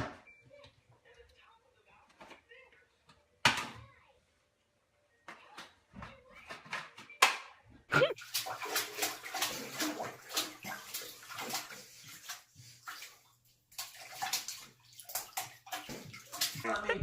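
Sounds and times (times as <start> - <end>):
water splashing in bathtub: 8.0 - 17.0.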